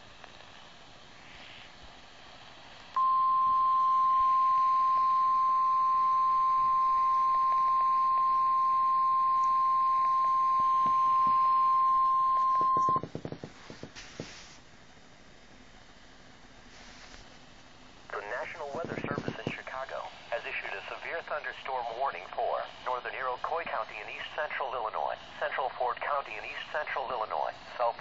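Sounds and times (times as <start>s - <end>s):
clicks and crackle: 0.2s - 0.6s, 10.6s - 14.3s, 18.1s - 20.0s
steady loud alarm tone: 3.0s - 13.1s.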